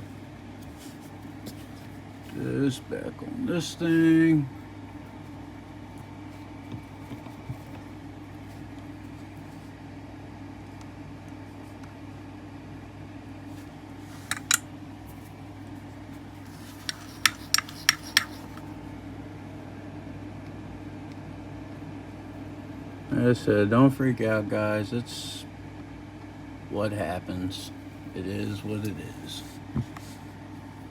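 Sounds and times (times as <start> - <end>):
low fan hum: 0.0 - 30.9
tools clicking and tapping: 14.3 - 14.7, 16.7 - 18.6.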